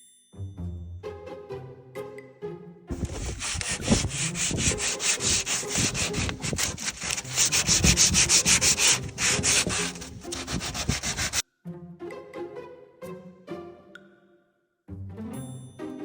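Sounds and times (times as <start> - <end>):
sandpaper rubbing on wood: 2.9 - 11.4.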